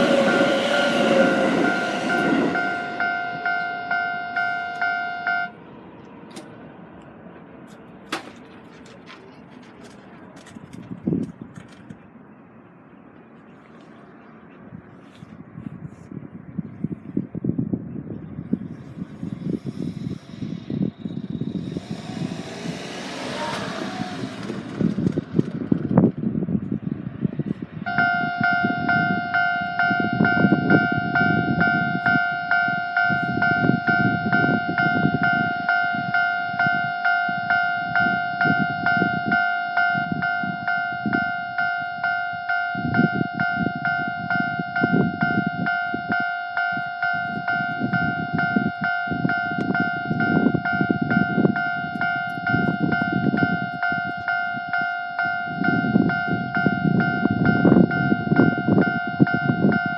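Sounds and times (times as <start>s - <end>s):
level crossing warning bell: 0.0s - 5.6s, 27.9s - 59.9s
passing vehicles rumble: 0.0s - 59.9s
vehicle rushing past: 18.9s - 26.4s.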